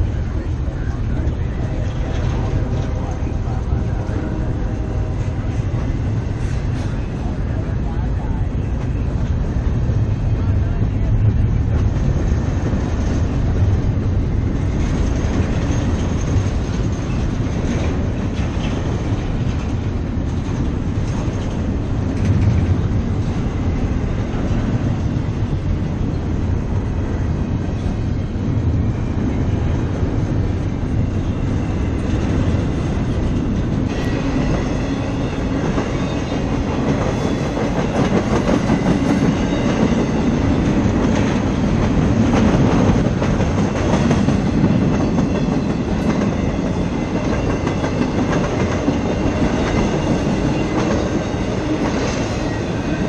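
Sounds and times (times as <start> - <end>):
low rumble of train: 0.0 - 53.0
train wheels clattering over rail joints: 14.7 - 23.5.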